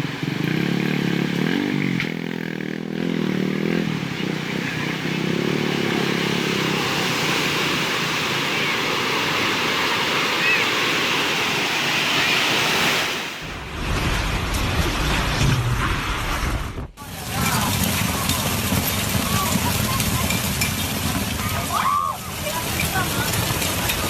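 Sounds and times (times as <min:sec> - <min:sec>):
motorcycle engine revving: 0:00.0 - 0:08.7, 0:14.9 - 0:24.0
rushing floodwater: 0:00.0 - 0:15.4, 0:17.0 - 0:24.0
faint voices: 0:17.0 - 0:24.0.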